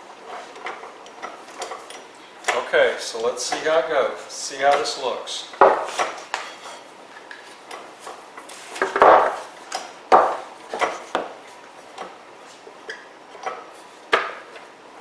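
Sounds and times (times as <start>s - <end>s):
wooden pieces knocking and clattering: 8.8s - 9.4s.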